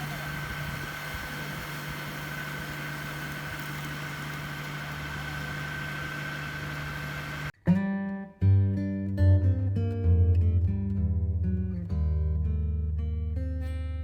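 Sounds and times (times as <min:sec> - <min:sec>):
machine engine idling: 0:00.0 - 0:07.5.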